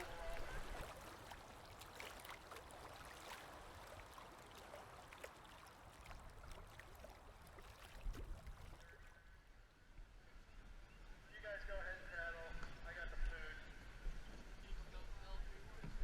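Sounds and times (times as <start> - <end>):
canoe paddles splashing: 0.0 - 9.2
faint river water: 0.0 - 16.0.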